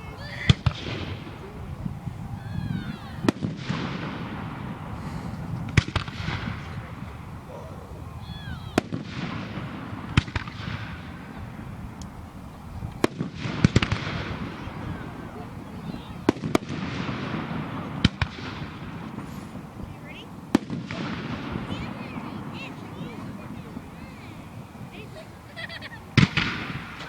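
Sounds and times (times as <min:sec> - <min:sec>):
firework shells bursting: 0:03.2 - 0:07.3, 0:26.2 - 0:27.0.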